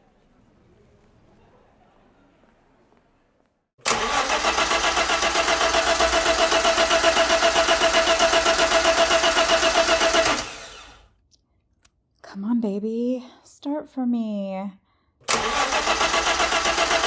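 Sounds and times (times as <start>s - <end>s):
car engine cranking on starter: 3.8s - 11.1s, 15.2s - 17.0s.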